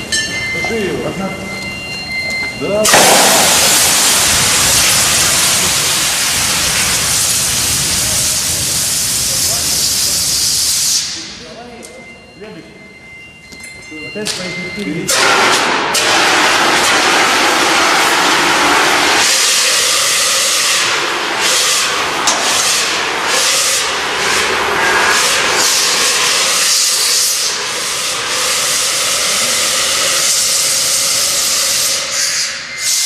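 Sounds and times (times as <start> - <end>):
fire extinguisher discharging: 2.8 - 11.2, 15.1 - 33.0.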